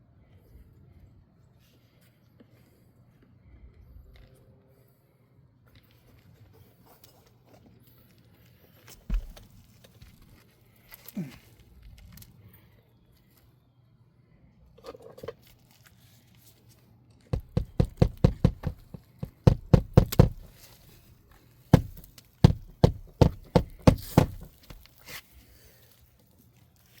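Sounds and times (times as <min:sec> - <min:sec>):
dull knocks: 0:09.1 - 0:09.5, 0:17.4 - 0:20.6, 0:21.8 - 0:24.9.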